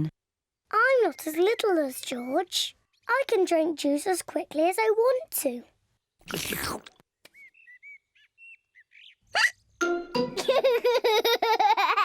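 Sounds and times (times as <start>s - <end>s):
faint birds tweeting: 0.8s - 4.2s, 7.2s - 9.8s
loud slurp of juice: 6.2s - 7.0s
cartoon hiccup: 9.4s - 9.6s
cartoon pigs laughing: 9.4s - 9.6s, 10.3s - 12.0s.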